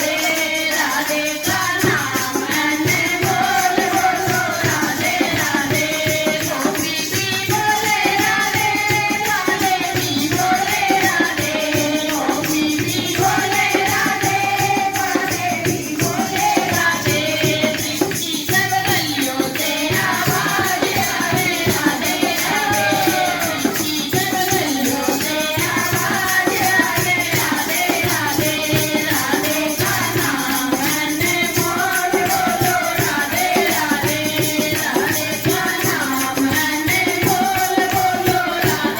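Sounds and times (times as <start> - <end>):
shaken rattle and tambourine beat: 0.0 - 38.9.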